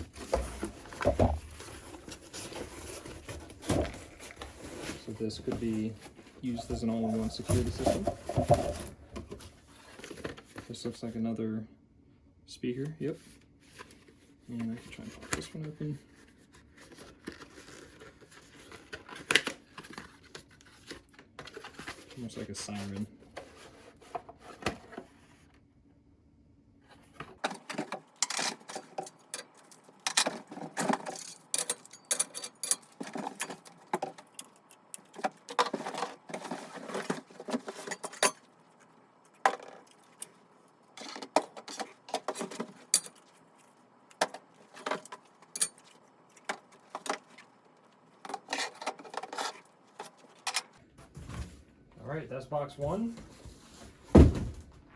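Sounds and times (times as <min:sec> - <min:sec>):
plastic parts clicking and rattling: 0:27.2 - 0:50.8.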